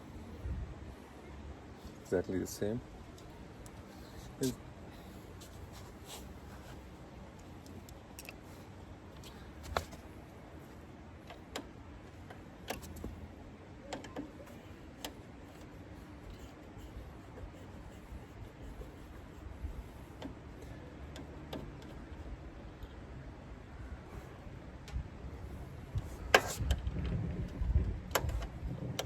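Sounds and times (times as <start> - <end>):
light clicks of parts and tools: 6.6 - 8.5, 28.1 - 29.0.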